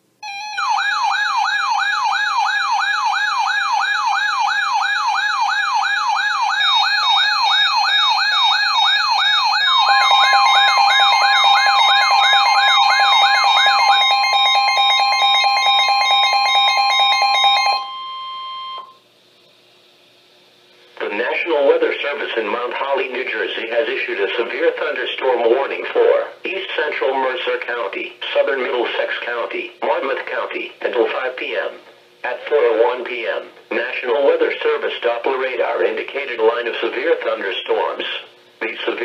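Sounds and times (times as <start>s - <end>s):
electronic warbling alarm: 0.2s - 19.0s
steady alarm tone: 0.2s - 19.0s.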